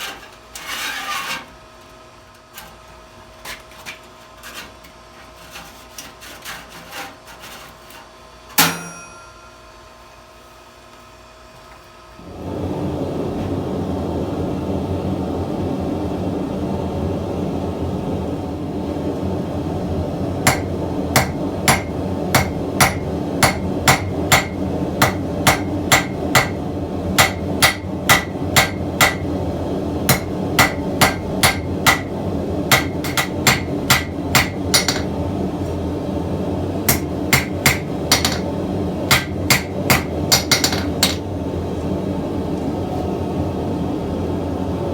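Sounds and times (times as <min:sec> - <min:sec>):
hammer striking metal on anvil: 0:08.6 - 0:09.7, 0:20.5 - 0:26.6, 0:27.2 - 0:29.3, 0:30.1 - 0:32.1, 0:32.7 - 0:35.1, 0:36.9 - 0:38.5, 0:39.1 - 0:41.2
gas burner roaring: 0:12.1 - 0:44.9.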